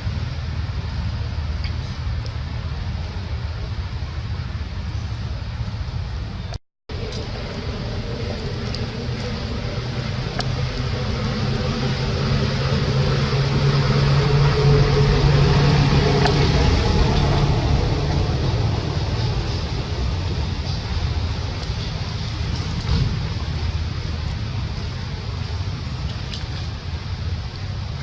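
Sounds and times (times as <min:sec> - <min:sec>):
outdoor noise: 0:00.0 - 0:28.0
vehicle engine passing: 0:06.9 - 0:28.0.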